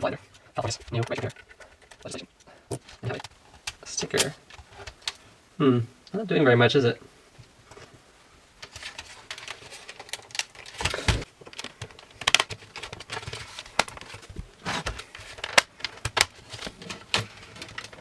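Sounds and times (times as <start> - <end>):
plastic casing clicks and crackles: 8.6 - 18.0.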